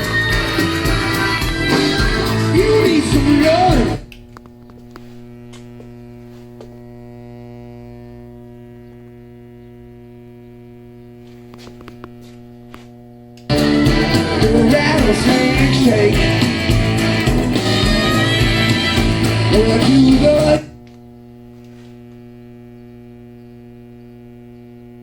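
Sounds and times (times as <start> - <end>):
rock music with singing: 0.0 - 4.1, 13.5 - 20.8
amplifier mains hum: 0.0 - 25.0.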